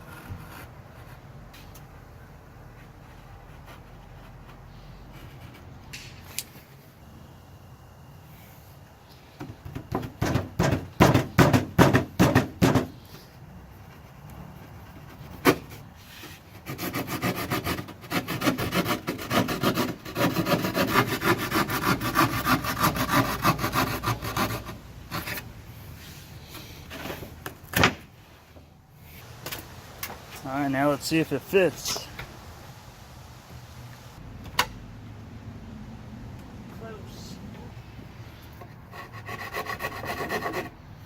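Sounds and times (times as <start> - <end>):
drywall scraping strokes: 13.9 - 27.4.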